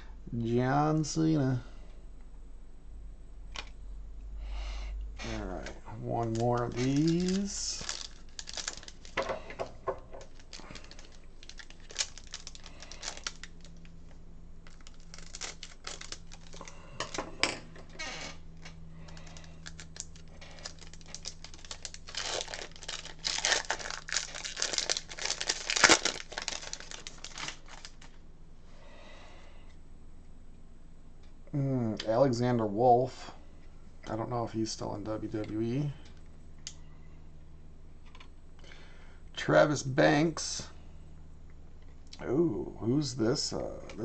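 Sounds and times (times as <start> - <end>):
wrapper crinkling and tearing: 5.3 - 17.2, 18.0 - 28.2.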